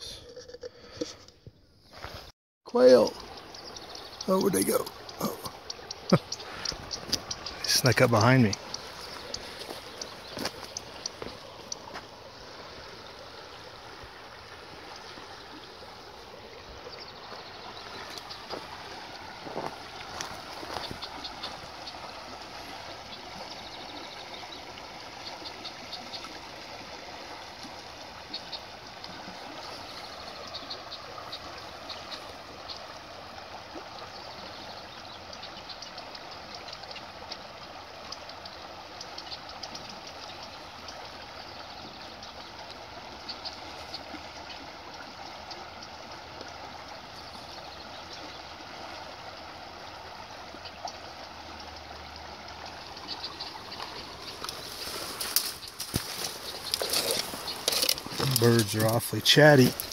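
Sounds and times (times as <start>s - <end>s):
stream of running water: 0.0s - 59.9s
bird chirps: 3.0s - 11.8s.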